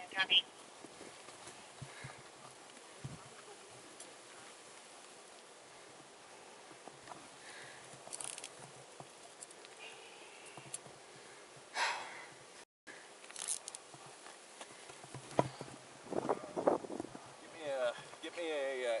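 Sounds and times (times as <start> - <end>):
handling rustling and clicks: 7.9 - 9.8, 13.2 - 15.7.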